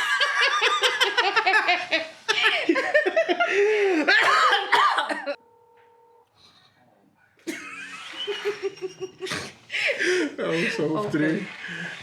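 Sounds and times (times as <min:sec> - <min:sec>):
people laughing hard: 0:00.0 - 0:04.2, 0:07.5 - 0:11.0.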